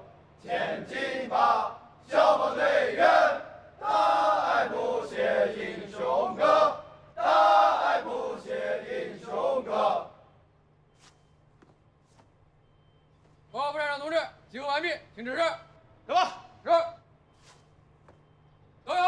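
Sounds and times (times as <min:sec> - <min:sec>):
men chanting in unison: 0:00.0 - 0:10.2.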